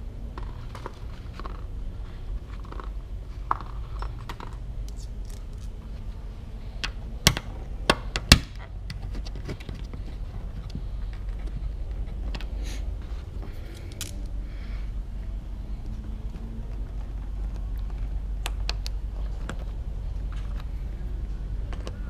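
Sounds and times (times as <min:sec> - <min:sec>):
steady low rumble: 0:00.0 - 0:22.0
hardware clicking and scraping: 0:02.3 - 0:14.4.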